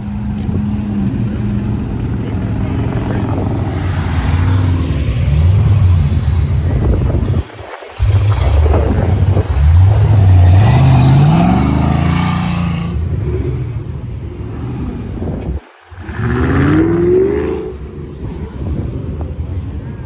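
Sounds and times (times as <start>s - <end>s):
car engine accelerating: 0.0s - 20.0s.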